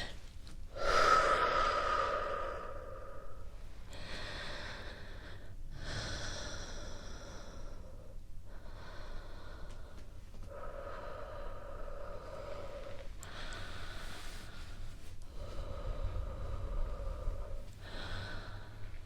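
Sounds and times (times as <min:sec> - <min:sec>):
woman breathing deeply: 0:00.0 - 0:19.0.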